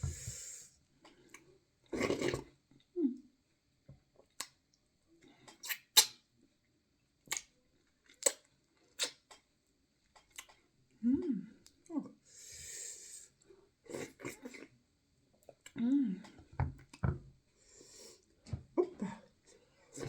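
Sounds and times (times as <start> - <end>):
wet mouth smacks and clicks: 4.4 - 4.6, 5.6 - 6.2, 7.3 - 7.5, 8.2 - 8.4, 9.0 - 9.3.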